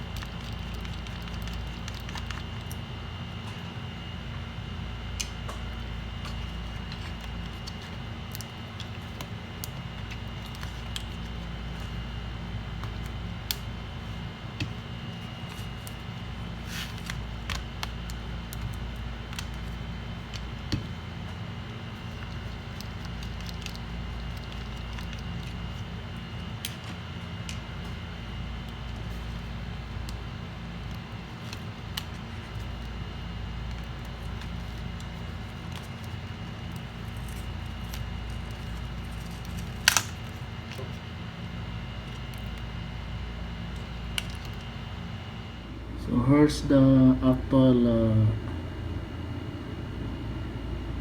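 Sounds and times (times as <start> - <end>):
low equipment hum: 0.0 - 51.0
faint high whine: 41.8 - 51.0.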